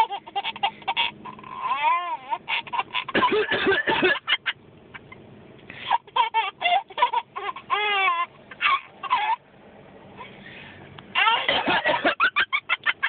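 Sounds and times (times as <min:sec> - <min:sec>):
baby laughing: 0:00.0 - 0:03.3, 0:05.9 - 0:09.4, 0:11.2 - 0:13.0
adult coughing: 0:03.1 - 0:04.3, 0:11.3 - 0:12.2.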